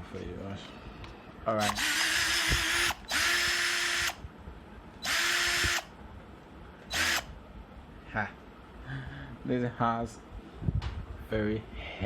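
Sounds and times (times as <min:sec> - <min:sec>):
impact drill motor whining: 0:01.6 - 0:04.2, 0:05.0 - 0:05.9, 0:06.9 - 0:07.3.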